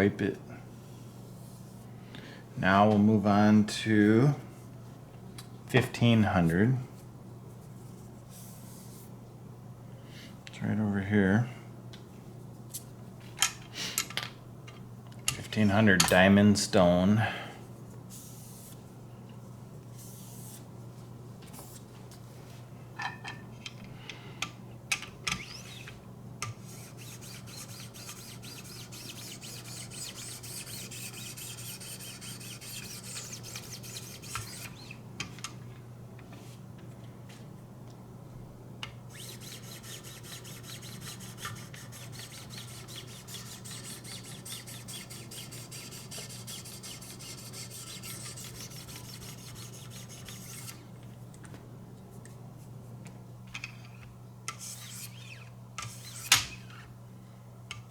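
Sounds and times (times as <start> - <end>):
sharpening stone rasping on blade: 26.8 - 35.0, 39.2 - 50.8, 54.5 - 56.5.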